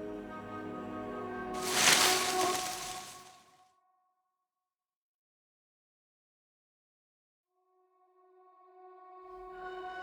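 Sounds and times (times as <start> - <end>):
slow sad string music: 0.0 - 3.4, 7.9 - 10.0.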